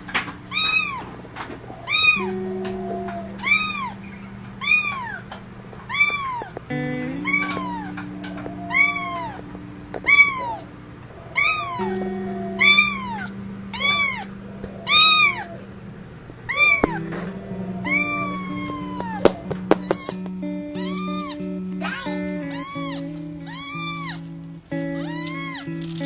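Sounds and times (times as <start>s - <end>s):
sustained background tones: 0.0s - 25.0s
kitten meowing: 0.5s - 1.1s, 1.8s - 5.2s, 5.9s - 6.6s, 7.2s - 10.7s, 11.3s - 15.6s, 16.5s - 17.1s, 17.8s - 20.2s, 20.8s - 24.2s, 25.0s - 25.7s.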